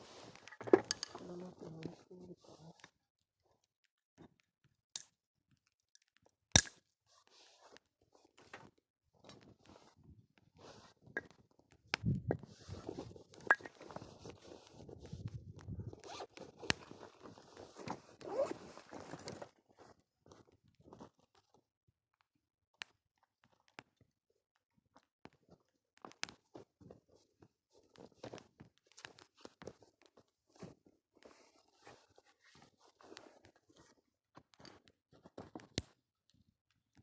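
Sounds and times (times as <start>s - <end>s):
small clicks and crackles: 0.0s - 37.0s
scraping and rustling: 12.3s - 20.0s
zipper being pulled: 15.9s - 19.4s.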